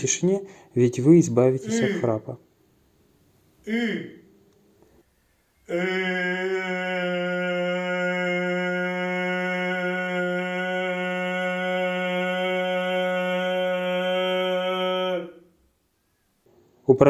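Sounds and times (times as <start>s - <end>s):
person singing long vowel: 5.6s - 15.5s.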